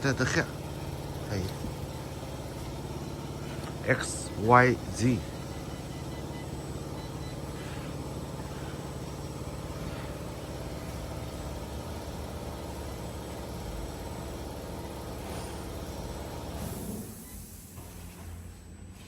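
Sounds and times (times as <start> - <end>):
workshop machine hum: 0.0 - 19.0.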